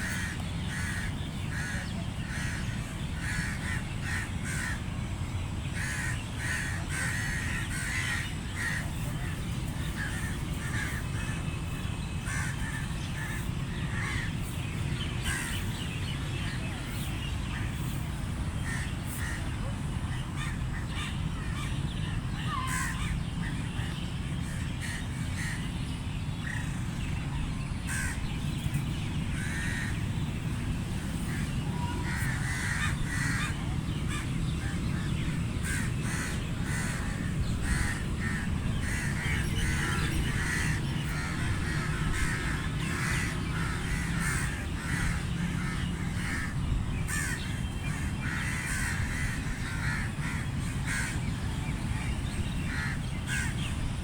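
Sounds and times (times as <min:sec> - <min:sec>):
crows cawing: 0:00.0 - 0:04.8, 0:05.8 - 0:11.4, 0:12.2 - 0:14.3, 0:15.2 - 0:15.9, 0:27.9 - 0:28.2, 0:29.3 - 0:30.1, 0:31.2 - 0:51.2, 0:52.7 - 0:53.6
low background rumble: 0:00.0 - 0:54.0.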